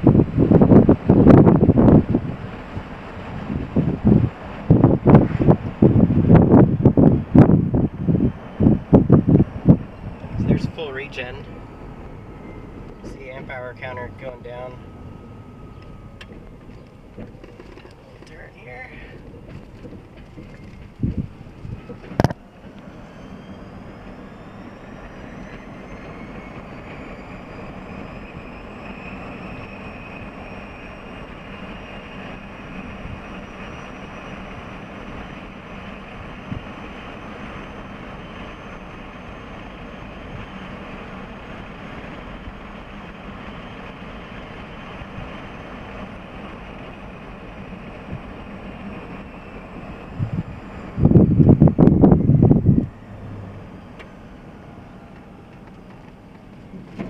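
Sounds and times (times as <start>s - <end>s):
electric drive whine: 0.0s - 57.0s
road and tyre noise: 0.0s - 57.0s.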